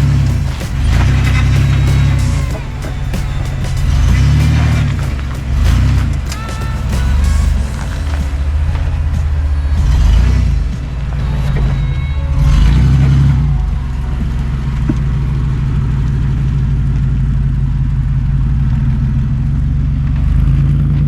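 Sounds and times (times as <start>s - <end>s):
van engine working under load: 0.0s - 21.0s.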